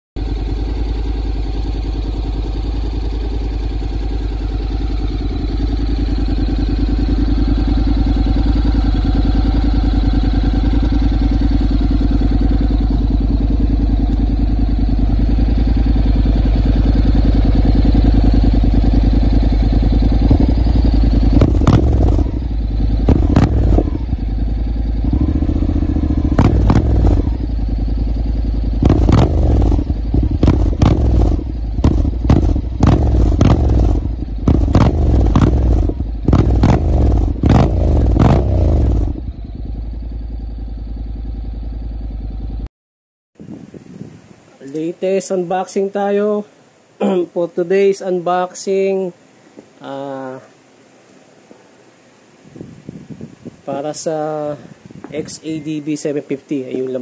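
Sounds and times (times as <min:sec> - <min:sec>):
motorcycle engine idling: 0:00.2 - 0:42.7, 0:52.7 - 0:57.0
engine revving sharply: 0:05.5 - 0:27.7, 0:28.8 - 0:39.3.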